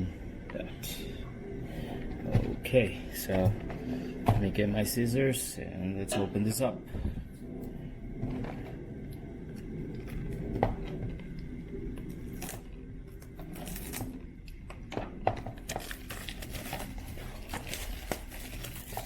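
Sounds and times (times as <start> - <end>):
plastic wrap crinkling and tearing: 13.3 - 14.2, 15.5 - 19.0
scissors cutting plastic wrap: 13.6 - 14.0, 15.6 - 19.0.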